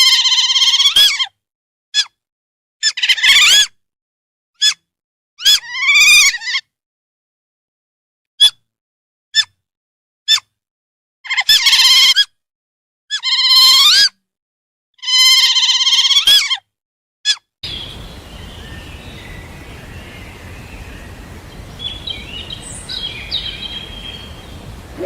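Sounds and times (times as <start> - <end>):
faint chirps: 17.6 - 25.0
high wavering animal call: 17.7 - 25.0.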